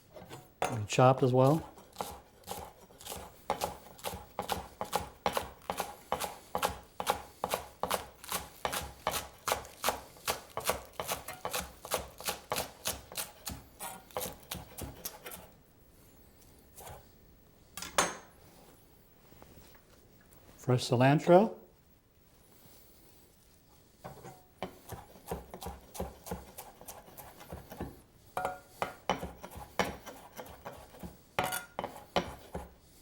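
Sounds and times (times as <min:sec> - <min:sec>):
knife chopping on cutting board: 0:01.5 - 0:15.5, 0:24.1 - 0:32.7.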